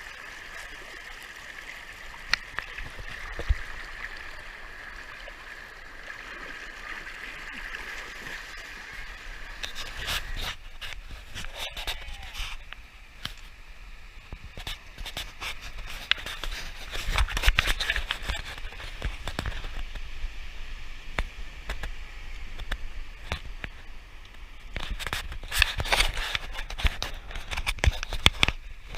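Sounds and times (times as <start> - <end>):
scraping and scratching: 8.0 - 12.7, 14.6 - 19.9, 24.7 - 28.9.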